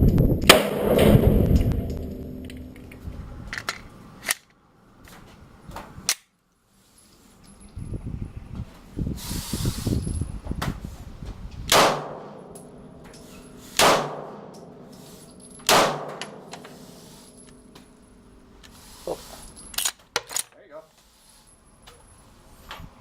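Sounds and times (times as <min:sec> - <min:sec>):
low rumbling noise: 0:00.0 - 0:06.1, 0:07.6 - 0:18.6
pistol shots: 0:00.5 - 0:02.4, 0:11.7 - 0:12.5, 0:13.8 - 0:14.5, 0:15.7 - 0:16.6.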